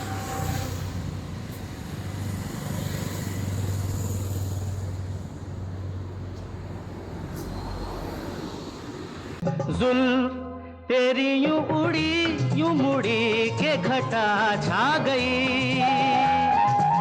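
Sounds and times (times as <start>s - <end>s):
street noise hiss: 0.0s - 9.4s
vehicle engine rumble: 0.0s - 9.4s.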